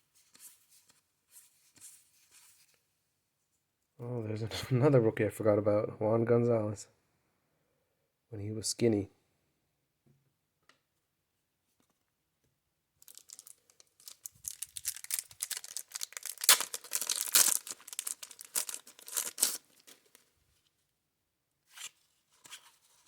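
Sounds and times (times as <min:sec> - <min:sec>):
paper wrapper tearing and crinkling: 0:13.0 - 0:20.2.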